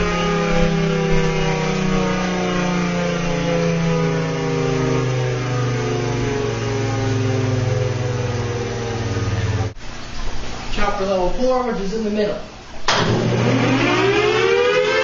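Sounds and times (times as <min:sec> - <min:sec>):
tornado siren winding down: 0:00.0 - 0:09.8, 0:12.9 - 0:15.0.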